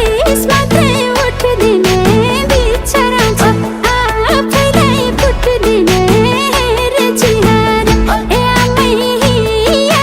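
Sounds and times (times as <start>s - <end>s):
pop-folk song with high vocals: 0.0s - 10.0s.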